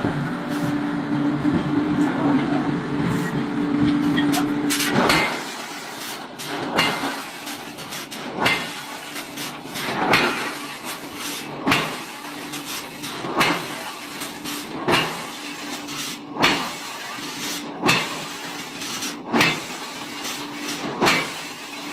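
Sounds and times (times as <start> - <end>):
machine humming: 0.0 - 8.4.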